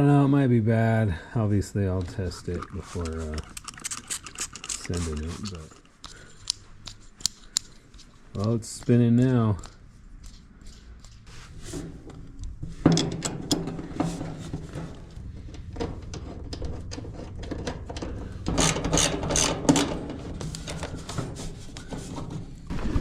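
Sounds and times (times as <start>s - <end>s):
metal parts clicking and rattling: 2.0s - 8.6s, 12.9s - 22.2s.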